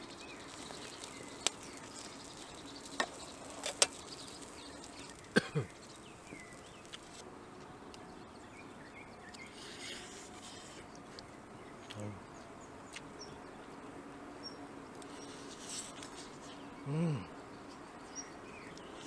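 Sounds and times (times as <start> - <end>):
fire popping: 0.0 - 7.3
campfire crackling: 0.0 - 19.0.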